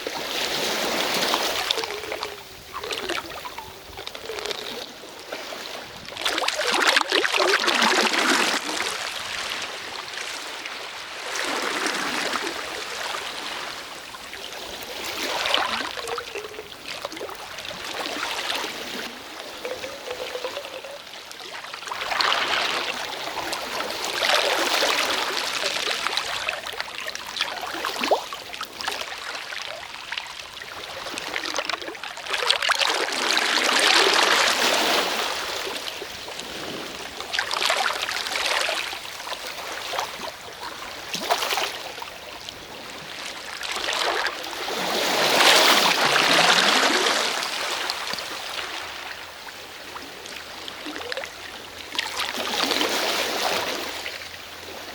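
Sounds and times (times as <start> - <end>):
sea waves washing onto shore: 0.0 - 29.6.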